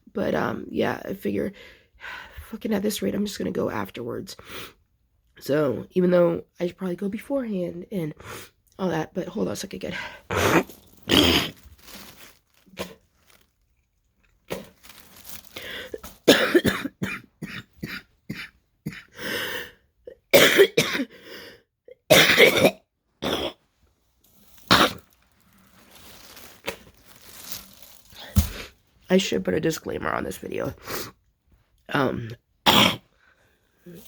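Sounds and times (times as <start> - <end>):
woman coughing wetly: 10.3 - 11.6, 16.2 - 19.1, 20.3 - 21.1, 22.1 - 23.6, 24.7 - 25.0, 32.7 - 33.0.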